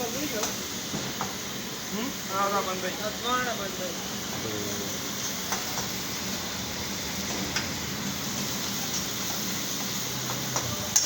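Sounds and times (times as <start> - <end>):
cooking hiss at stove: 0.0 - 11.0.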